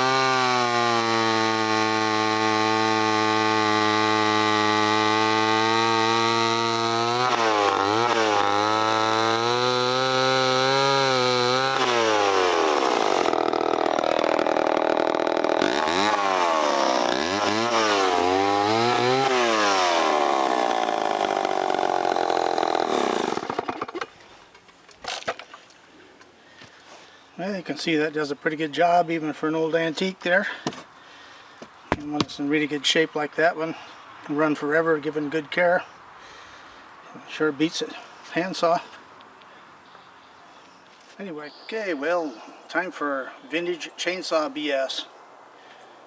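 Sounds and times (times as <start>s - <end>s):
chainsaw cutting through log: 0.0s - 24.1s.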